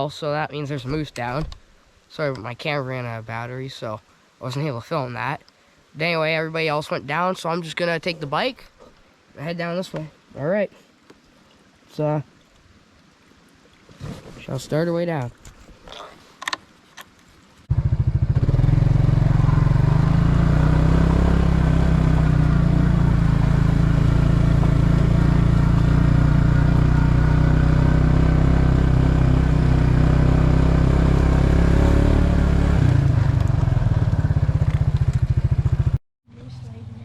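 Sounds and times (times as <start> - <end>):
motorbike engine running: 17.7 - 37.0.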